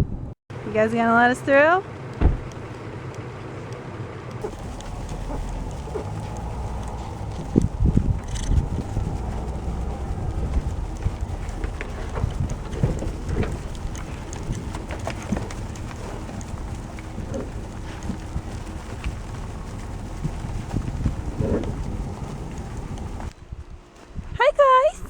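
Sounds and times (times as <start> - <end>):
hoof knocks: 2.1 - 3.2, 4.4 - 23.3
cattle lowing: 4.3 - 23.3
steady low rumble: 4.3 - 25.0.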